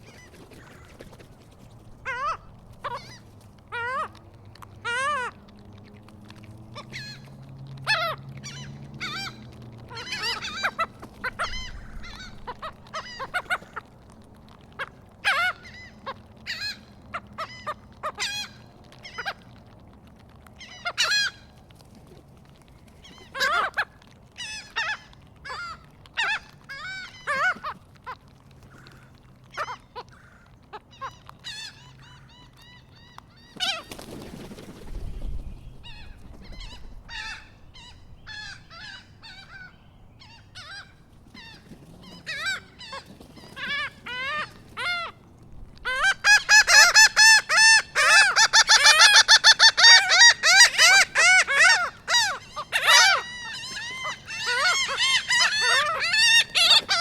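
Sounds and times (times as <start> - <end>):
crows calling: 0.0 - 5.6, 6.7 - 14.0, 23.0 - 34.1, 35.6 - 45.2, 45.8 - 57.0
seagulls calling: 0.0 - 57.0.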